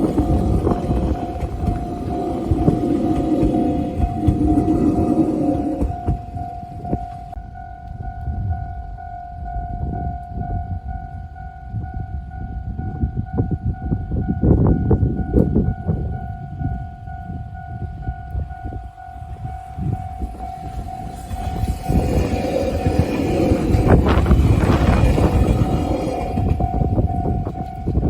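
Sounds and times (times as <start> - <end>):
level-crossing alarm ringing: 0.0 - 28.0
train rumbling with wheels clacking: 0.0 - 28.0.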